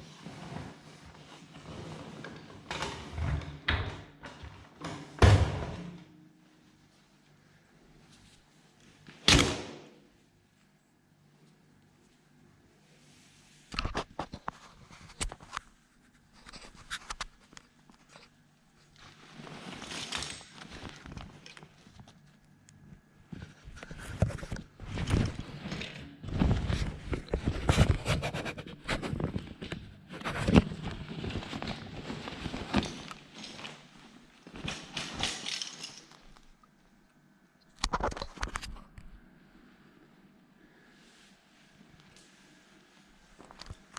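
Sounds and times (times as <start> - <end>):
rustling: 13.0 - 36.5
paper dust bag rustling: 30.2 - 35.8.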